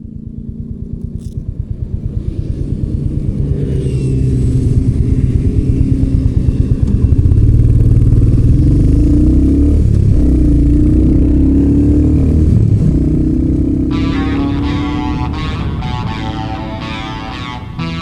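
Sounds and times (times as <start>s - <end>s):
motorcycle engine revving: 0.0s - 18.0s.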